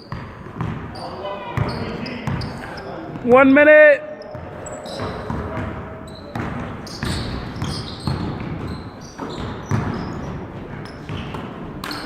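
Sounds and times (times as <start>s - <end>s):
sneaker squeaks: 0.0s - 3.4s, 4.1s - 12.0s
basketball bouncing on hardwood: 0.1s - 0.9s, 4.3s - 10.4s
murmur of voices: 0.8s - 7.6s.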